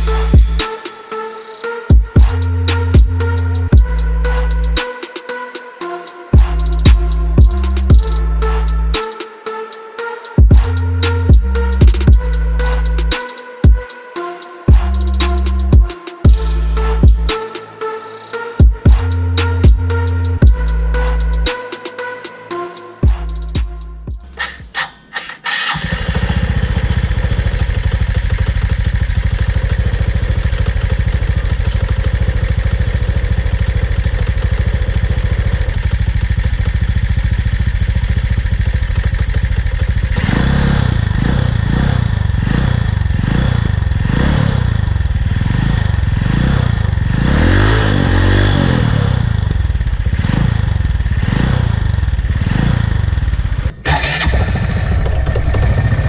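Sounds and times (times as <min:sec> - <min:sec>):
motorcycle engine revving: 0:23.0 - 0:56.0.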